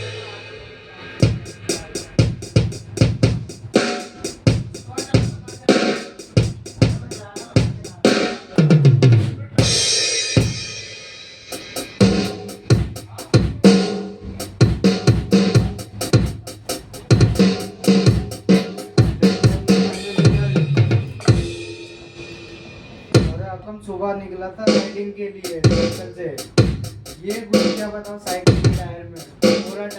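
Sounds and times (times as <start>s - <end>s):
electronic drum beat: 0.0s - 0.4s, 1.2s - 23.5s, 25.5s - 29.9s
deep toms falling in pitch: 1.2s - 10.6s, 11.6s - 22.1s, 25.5s - 29.9s
crash cymbal ringing: 19.9s - 23.4s.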